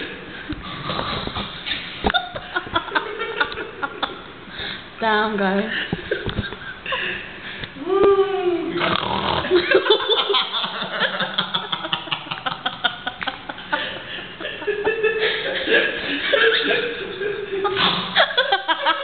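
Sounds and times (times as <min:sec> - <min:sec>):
stifled laughter and snickering: 0:09.2 - 0:19.0.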